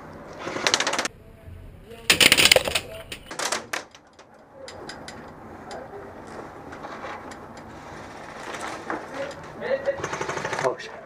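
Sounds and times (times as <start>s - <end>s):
pellets striking hard surfaces: 2.1s - 3.4s
airsoft guns firing: 2.1s - 3.5s, 9.9s - 10.9s.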